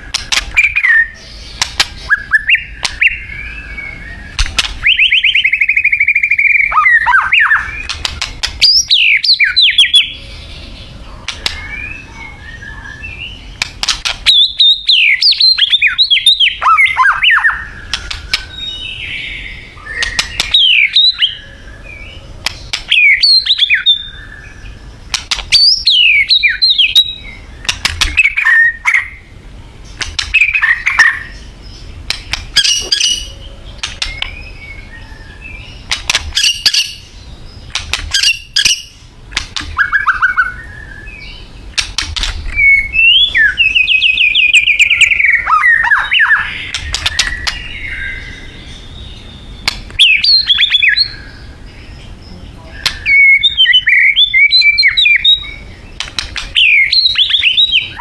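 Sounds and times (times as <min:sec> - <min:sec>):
bird sharp clicks: 0:00.0 - 0:03.2, 0:04.3 - 0:10.1, 0:11.2 - 0:11.8, 0:13.5 - 0:16.5, 0:17.1 - 0:18.5, 0:20.0 - 0:21.2, 0:22.4 - 0:23.9, 0:25.1 - 0:29.1, 0:29.9 - 0:31.2, 0:32.0 - 0:34.4, 0:35.8 - 0:40.6, 0:41.7 - 0:47.9, 0:49.6 - 0:51.1, 0:52.8 - 0:55.3, 0:56.0 - 0:57.7
bird singing whistled phrases: 0:02.0 - 0:07.9, 0:08.6 - 0:10.2, 0:11.4 - 0:13.4, 0:14.3 - 0:22.2, 0:22.9 - 0:24.8, 0:25.5 - 0:29.2, 0:36.4 - 0:37.1, 0:38.1 - 0:39.0, 0:39.8 - 0:41.5, 0:42.6 - 0:51.5, 0:52.6 - 0:55.7, 0:56.6 - 0:58.0.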